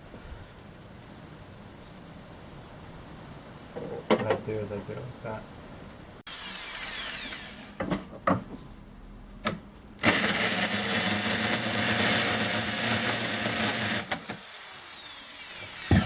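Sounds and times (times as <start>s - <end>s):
power drill whining: 6.3s - 7.8s, 10.0s - 16.0s.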